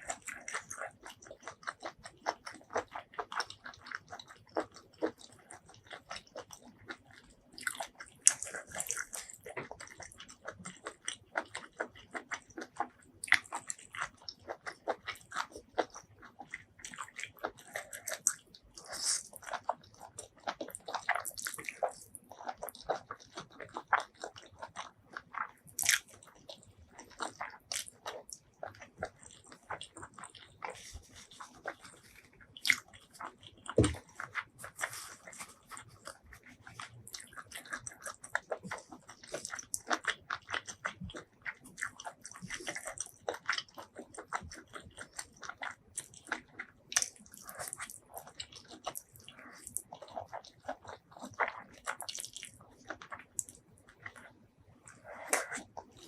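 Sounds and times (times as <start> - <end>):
person chewing food: 0.0 - 56.0.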